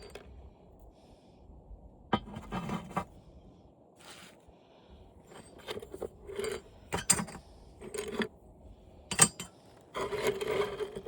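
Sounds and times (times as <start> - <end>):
scrap steel clinking: 5.3 - 8.3, 9.1 - 11.0.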